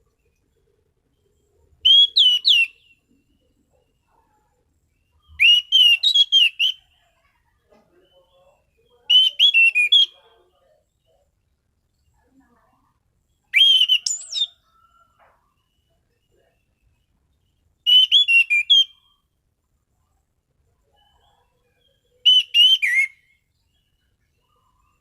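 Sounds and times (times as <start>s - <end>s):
thrush singing whistled notes: 1.8s - 3.2s, 5.1s - 6.9s, 8.8s - 10.2s, 13.5s - 14.9s, 17.8s - 19.3s, 21.4s - 24.1s.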